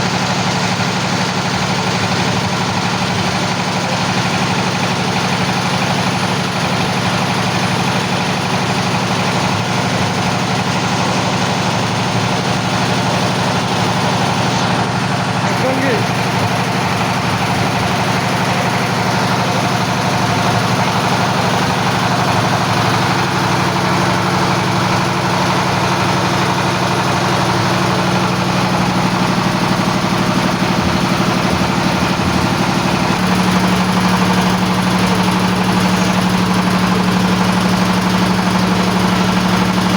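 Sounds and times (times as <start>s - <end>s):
drilling rig engine running: 0.0s - 39.9s.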